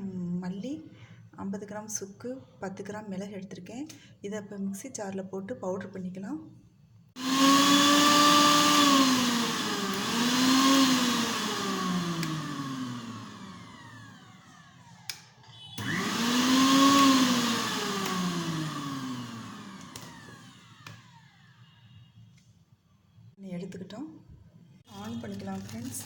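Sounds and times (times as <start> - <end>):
mixer grinder motor whine: 7.2 - 21.7
mixer grinder click: 12.2 - 12.5, 18.0 - 18.3, 19.8 - 21.1.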